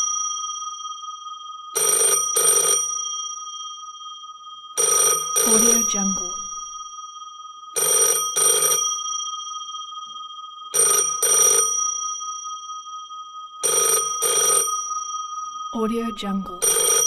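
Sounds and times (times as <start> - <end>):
old telephone bell ringing: 1.8 - 3.5, 4.8 - 6.8, 7.8 - 9.7, 10.7 - 12.6, 13.6 - 15.6, 16.6 - 17.0.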